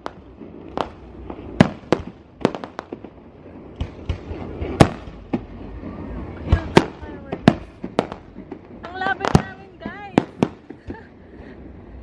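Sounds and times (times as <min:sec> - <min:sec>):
fireworks bangs and crackles: 0:00.0 - 0:12.0
low rumble: 0:00.0 - 0:12.0.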